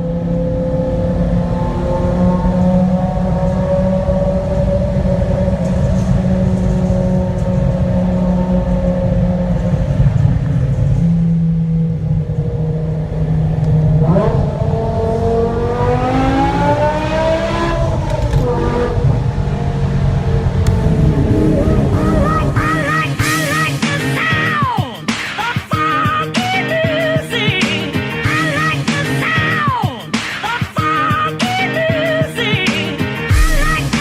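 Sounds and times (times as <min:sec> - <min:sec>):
car engine accelerating: 0:00.0 - 0:24.6
road rumble: 0:00.0 - 0:24.7.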